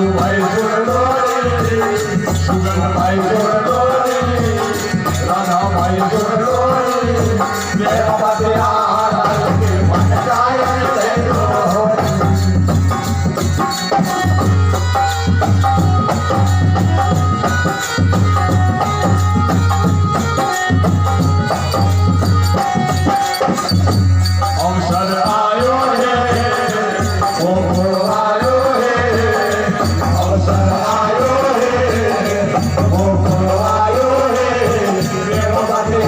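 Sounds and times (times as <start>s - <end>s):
devotional singing: 0.0s - 12.8s, 24.4s - 36.0s
hand drums: 0.0s - 36.0s
rattling percussion: 0.0s - 36.0s.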